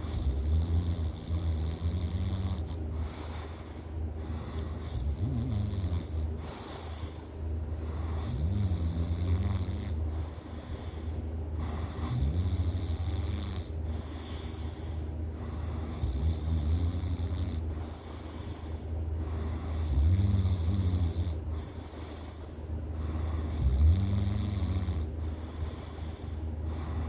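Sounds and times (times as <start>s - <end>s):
person snoring: 0.0s - 7.2s, 7.8s - 10.1s, 11.6s - 14.7s, 15.4s - 17.9s, 19.2s - 21.8s, 23.0s - 27.0s.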